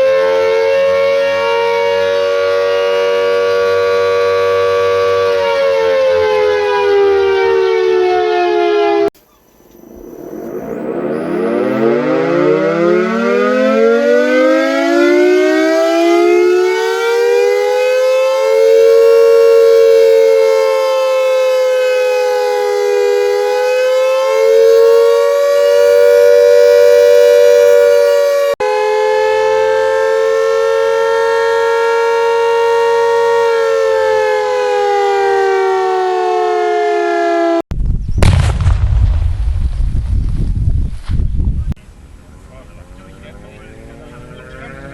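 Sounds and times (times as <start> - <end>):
air-raid siren wailing: 0.0 - 37.6, 42.4 - 44.9
noisy low rumble: 9.2 - 12.6, 37.8 - 44.9.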